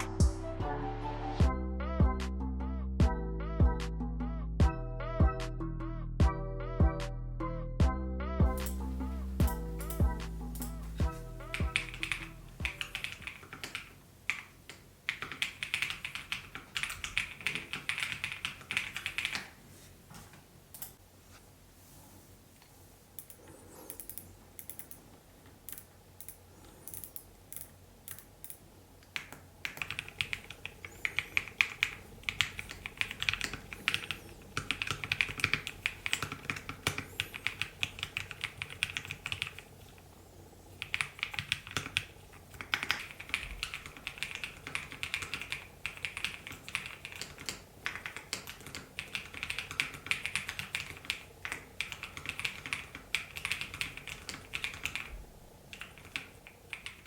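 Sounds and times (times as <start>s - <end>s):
mechanical keyboard typing: 11.4s - 19.5s, 25.7s - 39.6s, 40.8s - 55.1s, 55.7s - 57.0s.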